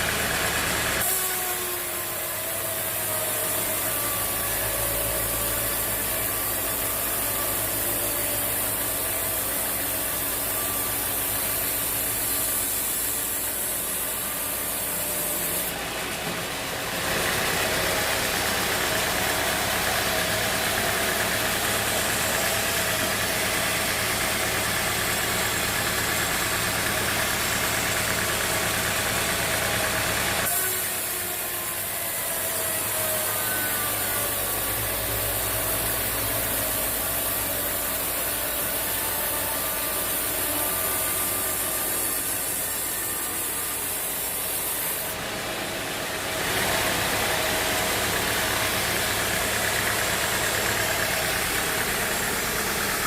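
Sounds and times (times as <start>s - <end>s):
sawmill machinery hum: 0.0s - 53.0s.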